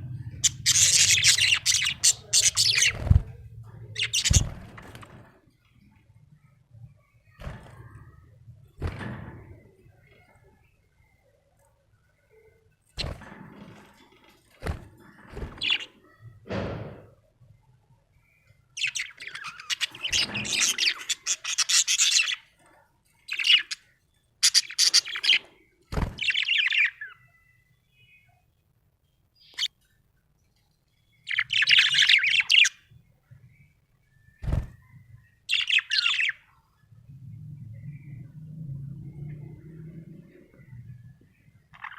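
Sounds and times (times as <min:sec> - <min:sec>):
budgerigar chirping: 0:00.4 - 0:02.9, 0:24.4 - 0:25.4.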